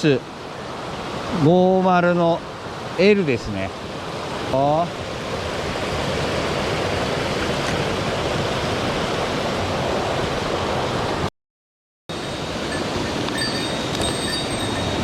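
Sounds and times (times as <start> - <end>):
stream rushing over rocks: 12.1 - 15.0.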